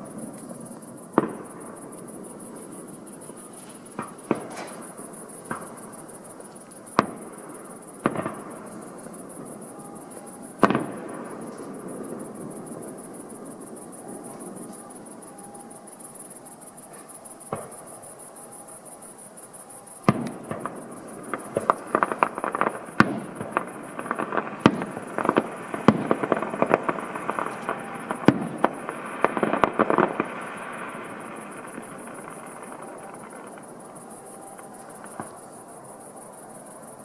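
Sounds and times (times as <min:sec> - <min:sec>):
fireworks bangs and crackling: 0:00.0 - 0:36.2.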